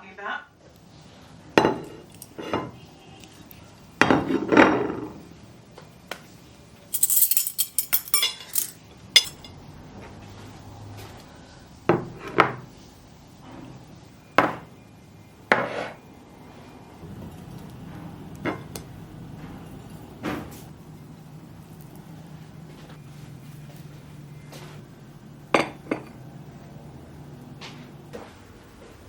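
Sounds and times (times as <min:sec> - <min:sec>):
dishes and utensils clinking: 0:06.9 - 0:09.6, 0:25.5 - 0:26.2.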